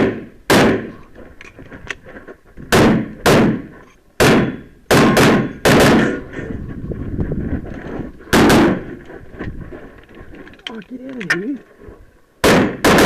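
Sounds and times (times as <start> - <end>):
handgun shots: 2.7 - 6.2, 12.4 - 13.0.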